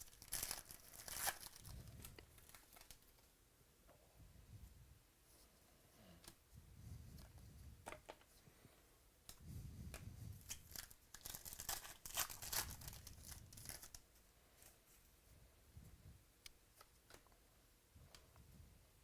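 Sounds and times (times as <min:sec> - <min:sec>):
card wrappers tearing and crinkling: 0:00.0 - 0:01.7, 0:10.5 - 0:14.0.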